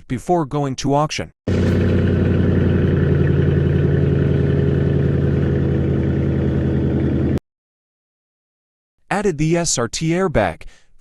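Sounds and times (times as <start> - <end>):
car engine idling: 1.5 - 7.4.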